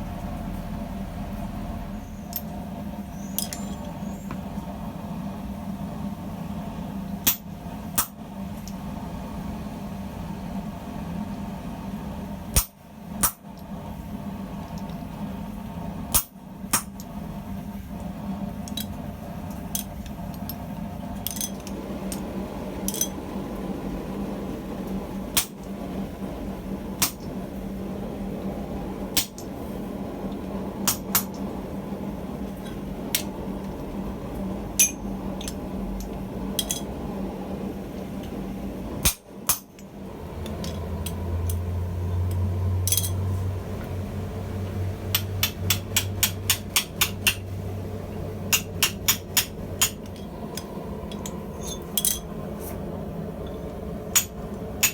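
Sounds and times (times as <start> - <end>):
steady low hum: 0.0 - 54.9
hammer striking hot steel on anvil: 7.2 - 8.2, 12.5 - 13.6, 16.1 - 17.1, 27.0 - 27.3, 29.1 - 29.5, 30.8 - 31.4, 34.8 - 35.6, 39.0 - 39.8, 45.1 - 47.5, 48.5 - 52.3, 54.1 - 54.9.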